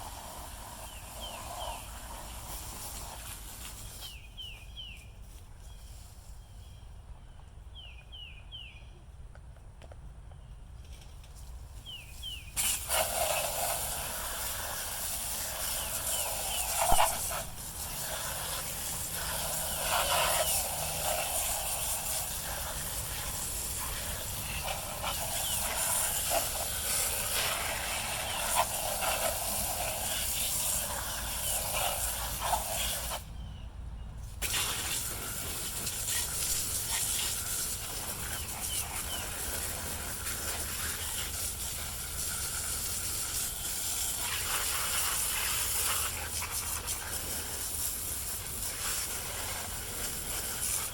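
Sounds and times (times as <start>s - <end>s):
high-pressure spray nozzle hissing: 12.6s - 33.2s, 34.4s - 50.9s
crackly water spatter: 34.4s - 50.9s.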